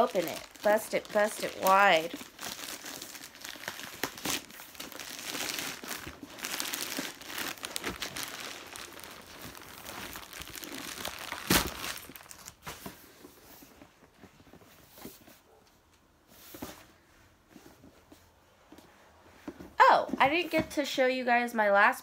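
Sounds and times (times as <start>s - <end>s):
packaging crinkling and tearing: 0.0s - 12.7s.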